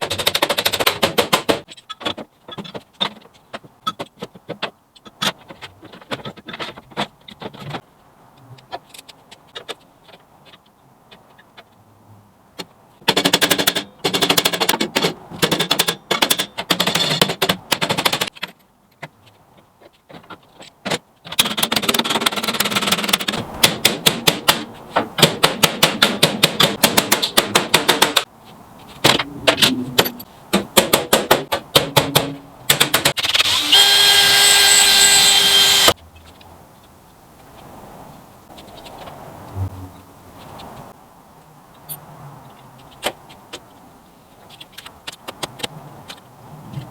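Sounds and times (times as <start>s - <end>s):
hammering on metal sheet: 0.0s - 1.7s, 21.6s - 28.3s, 29.0s - 33.2s
power tool high whine: 33.3s - 35.9s.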